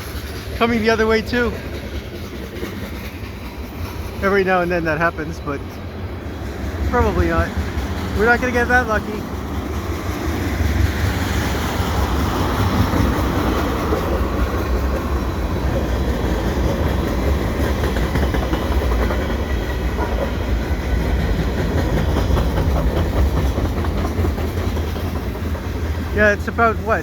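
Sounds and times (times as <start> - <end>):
train wheels rumbling on rail: 0.0 - 27.0
wheel clicks over rail joints: 21.0 - 26.1.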